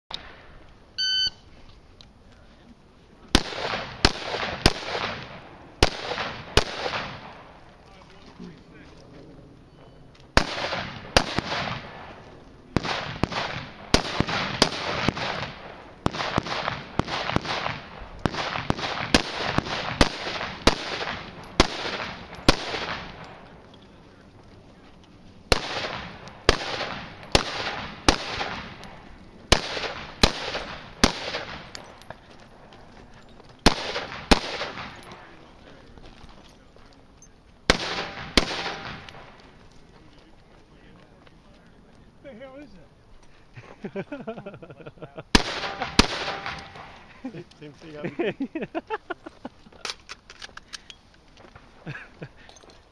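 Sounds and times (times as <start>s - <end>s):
rifle shots with echo: 3.3s - 7.7s, 10.3s - 23.7s, 25.5s - 32.1s, 33.6s - 35.6s, 37.7s - 39.6s, 45.3s - 47.1s.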